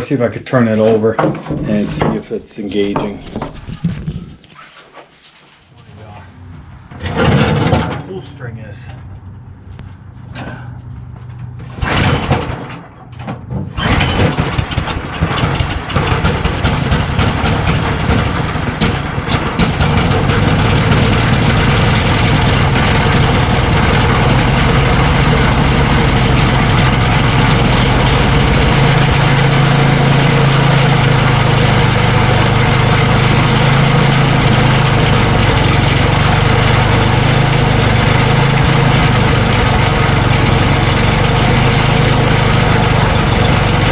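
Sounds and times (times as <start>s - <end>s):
snowblower engine starting: 7.0s - 8.0s, 13.8s - 43.9s.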